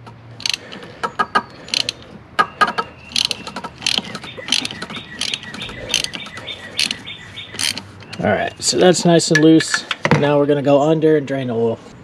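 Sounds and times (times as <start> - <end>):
socket ratchet clicking: 0.0 - 0.9, 1.6 - 2.1, 3.1 - 8.2.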